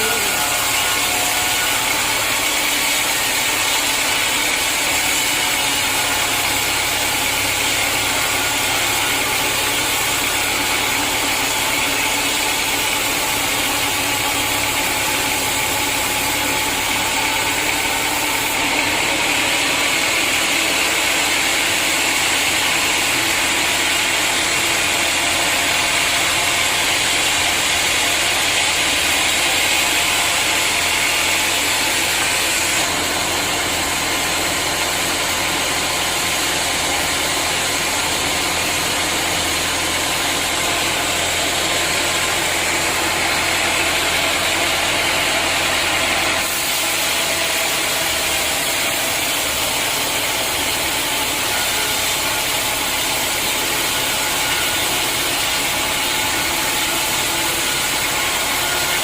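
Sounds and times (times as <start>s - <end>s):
sawmill machinery sawing log: 0.0s - 59.0s.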